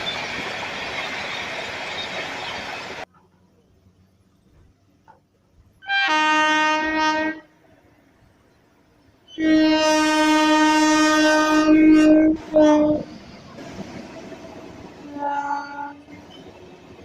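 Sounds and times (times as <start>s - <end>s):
locomotive horn blasts: 5.8s - 7.6s, 9.3s - 13.0s, 15.0s - 16.1s.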